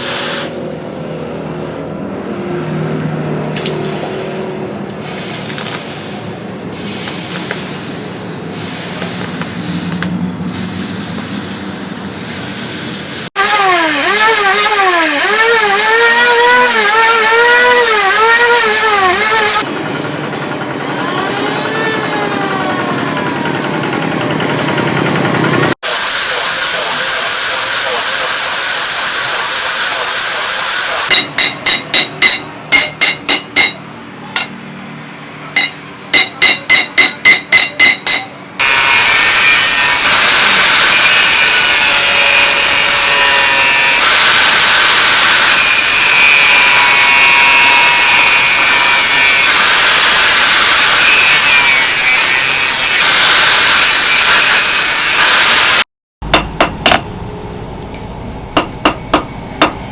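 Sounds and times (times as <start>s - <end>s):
hiss: 0.0s - 0.6s, 3.6s - 13.3s
power tool rasping: 13.4s - 19.7s
hammer blows on steel: 31.1s - 33.8s, 35.6s - 38.8s.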